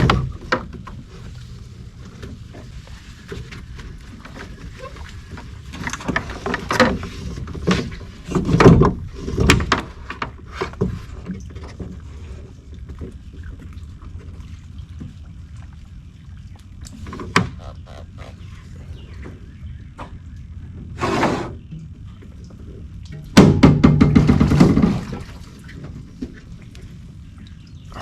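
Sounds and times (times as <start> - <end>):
water splashing: 0.0 - 19.5, 21.8 - 28.0
rowboat knocking: 23.4 - 25.3.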